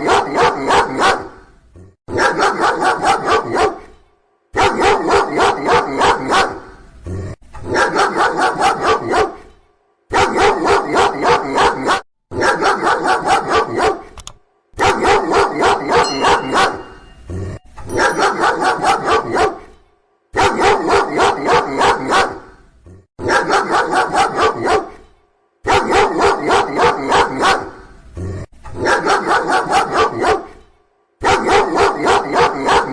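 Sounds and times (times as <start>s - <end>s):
dog barking loudly: 0.0s - 1.5s, 2.1s - 3.9s, 4.5s - 6.8s, 7.6s - 9.5s, 10.1s - 14.2s, 14.8s - 17.2s, 17.9s - 19.8s, 20.4s - 22.6s, 23.2s - 25.0s, 25.6s - 27.8s, 28.8s - 30.6s, 31.2s - 32.9s.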